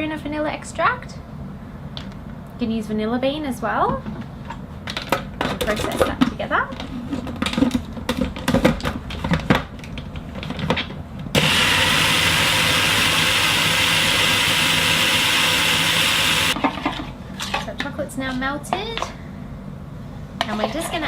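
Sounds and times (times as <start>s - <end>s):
food processor motor running: 11.4s - 16.6s.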